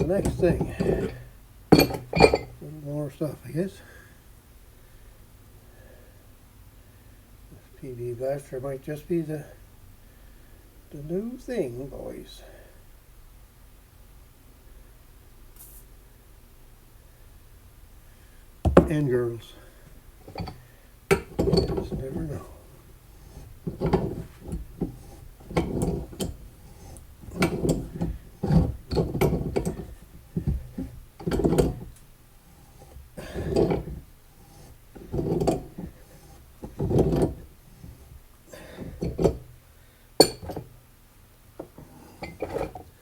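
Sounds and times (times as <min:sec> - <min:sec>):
shaft creaking and grinding: 0:00.0 - 0:02.6, 0:20.2 - 0:39.5, 0:40.2 - 0:40.7, 0:41.6 - 0:42.9.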